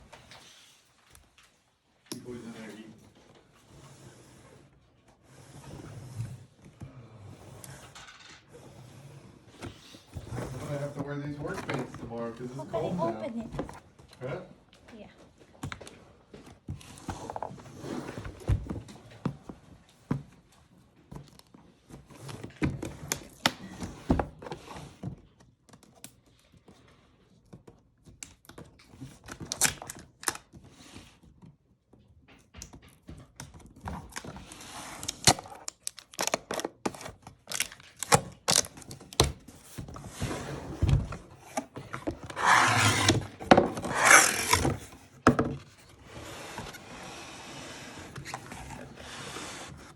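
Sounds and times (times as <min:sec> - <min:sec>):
packaging rustling and tearing: 0:34.1 - 0:39.4.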